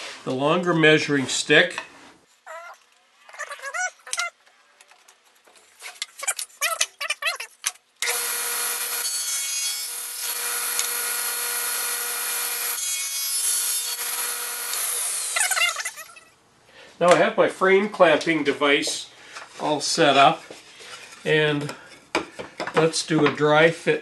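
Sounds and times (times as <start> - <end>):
short squeaks and clicks: 2.5 - 5.0, 6.0 - 7.8
power saw cutting wood: 8.0 - 16.0.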